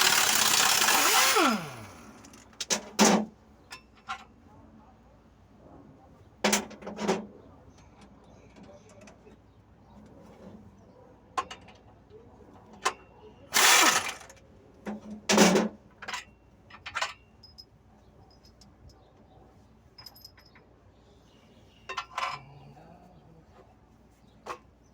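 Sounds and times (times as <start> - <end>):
power tool burst: 0.0 - 2.4, 13.6 - 14.3.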